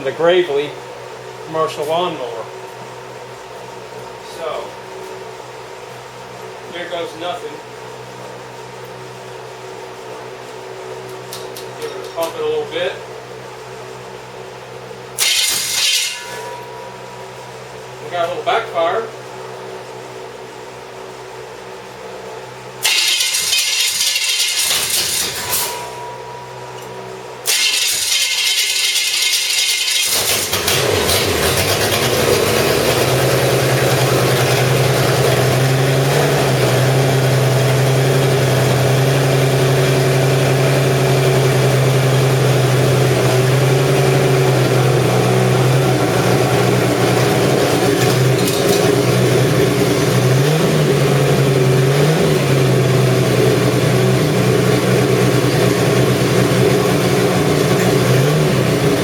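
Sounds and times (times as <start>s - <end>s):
engine cranking and running: 22.8s - 26.2s, 26.8s - 59.0s.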